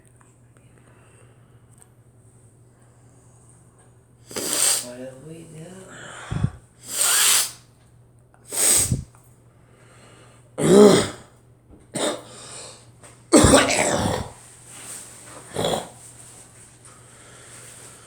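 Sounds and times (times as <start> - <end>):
person coughing: 6.2 - 6.6, 10.6 - 11.3, 12.0 - 12.4, 13.3 - 14.4, 15.5 - 16.0.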